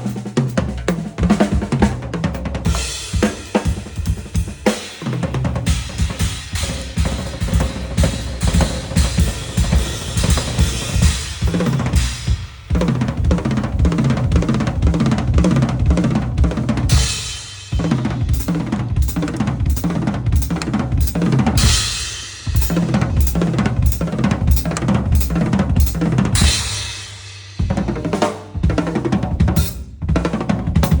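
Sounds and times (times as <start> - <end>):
snare drum strokes: 0.0 - 14.7, 16.0 - 29.9
kick drum: 5.6 - 26.8, 28.6 - 31.0
cymbal crashes: 16.9 - 23.5.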